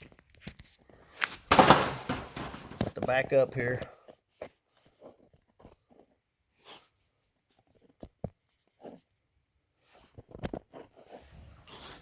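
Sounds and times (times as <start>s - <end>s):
insulation rustling and knocking: 1.4s - 6.2s.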